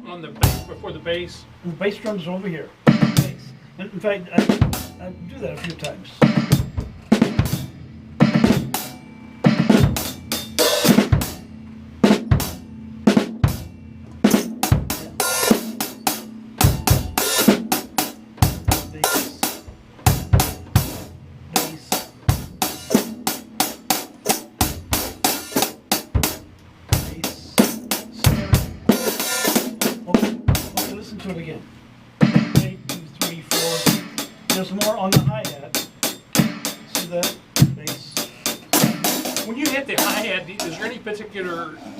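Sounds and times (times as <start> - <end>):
drum kit groove: 0.0 - 41.5.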